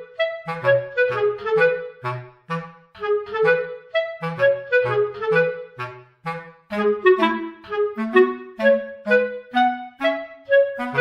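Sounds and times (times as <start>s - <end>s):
clarinet-like woodwind melody: 0.0s - 11.0s.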